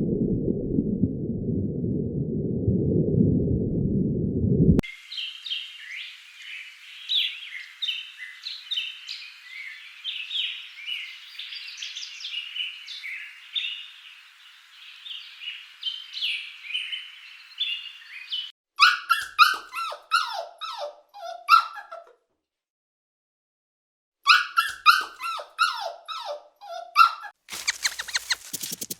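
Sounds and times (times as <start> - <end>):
short high animal chirps: 27.5 - 28.9
yelping calls sliding down: 27.5 - 28.9.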